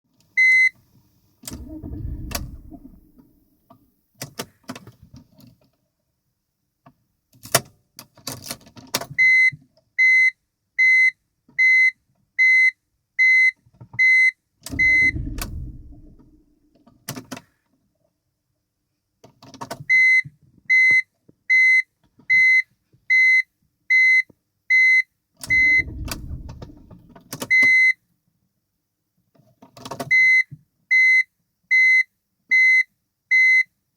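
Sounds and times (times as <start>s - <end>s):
engine cranking low rumbles: 1.5s - 3.9s, 14.7s - 16.8s, 25.4s - 27.5s.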